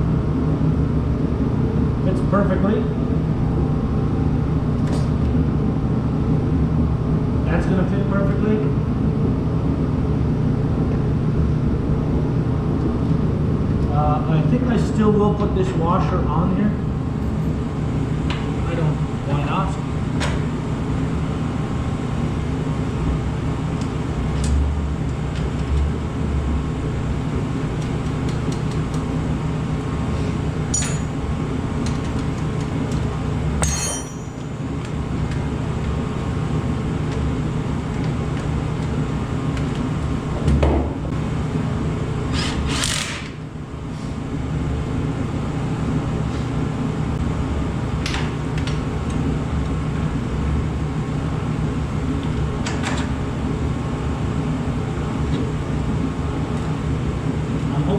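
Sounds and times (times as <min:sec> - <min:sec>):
low mechanical hum: 0:00.0 - 0:57.9
metallic clinks of hand tools: 0:33.6 - 0:34.5.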